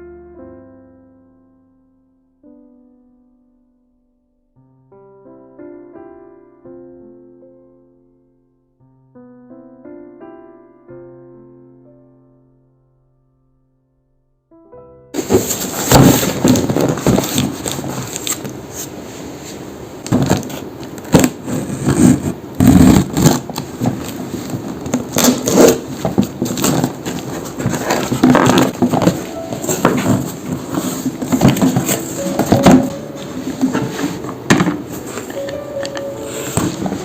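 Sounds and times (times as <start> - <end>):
crackling and scraping of handling: 15.2 - 37.0.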